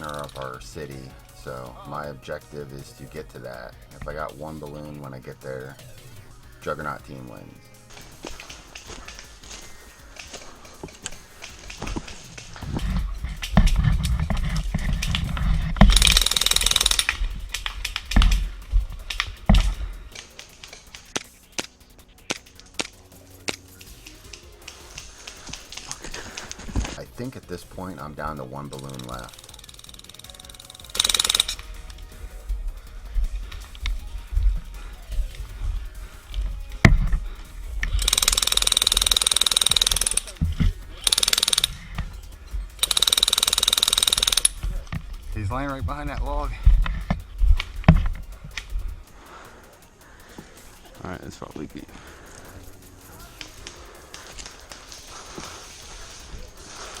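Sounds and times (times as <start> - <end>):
sharp clicks: 0.0 - 27.0, 28.7 - 57.0
airsoft minigun buzzing burst: 5.9 - 27.0, 28.8 - 51.1
rumbling and knocks of movement: 11.6 - 16.3, 44.5 - 49.2.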